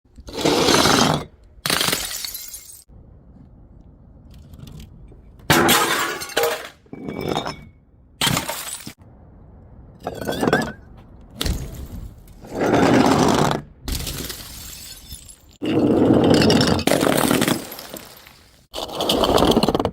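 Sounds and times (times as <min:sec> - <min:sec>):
glass bottles smashing: 0:01.7 - 0:02.9, 0:05.5 - 0:09.0, 0:13.9 - 0:18.7
glass fragments clinking: 0:14.1 - 0:15.6, 0:17.2 - 0:18.7.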